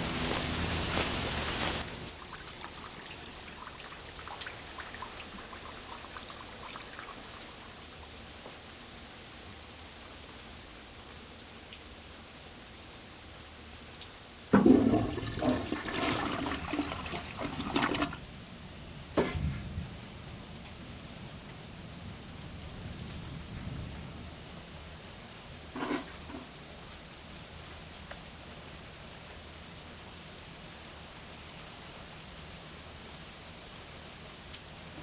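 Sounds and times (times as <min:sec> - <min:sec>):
toilet flushing: 0:00.0 - 0:07.8, 0:14.5 - 0:18.2
faint steady hiss: 0:00.0 - 0:35.0.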